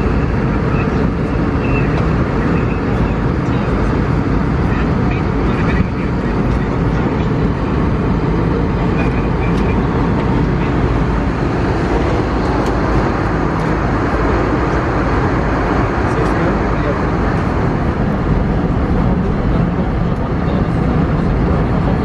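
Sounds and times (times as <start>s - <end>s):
airliner cabin roar: 0.0s - 22.0s.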